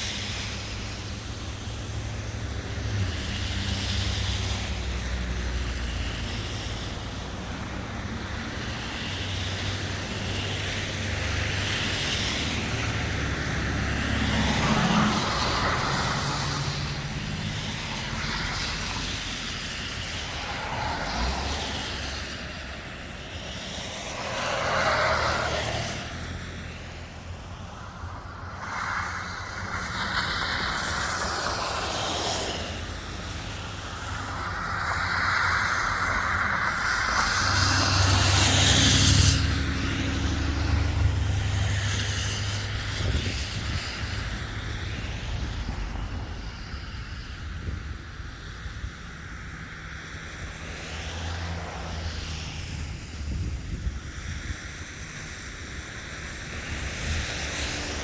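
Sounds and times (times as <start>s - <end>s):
road vehicles passing: 0.0s - 58.0s.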